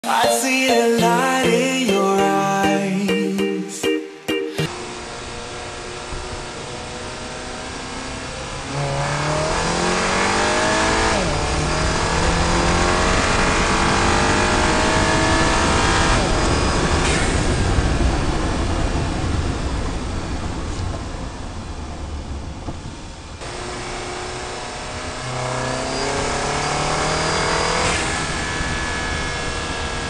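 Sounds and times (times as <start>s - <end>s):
car engine accelerating: 5.0s - 17.1s, 23.4s - 30.0s.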